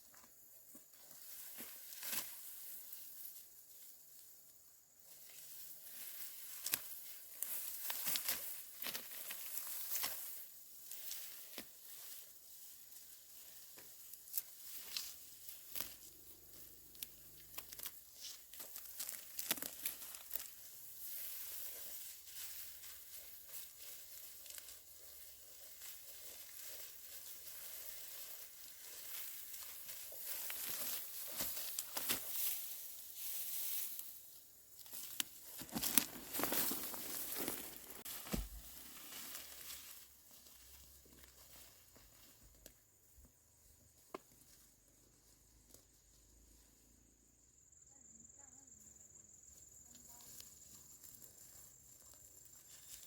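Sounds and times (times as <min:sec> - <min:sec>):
dry rustling and crackling: 0:05.1 - 0:43.2, 0:49.9 - 0:53.0.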